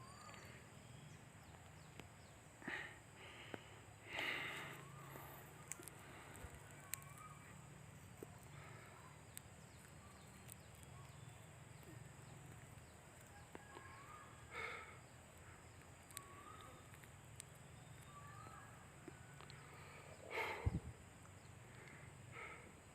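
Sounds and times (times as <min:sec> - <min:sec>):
faint bird chirps: 0:00.0 - 0:22.9.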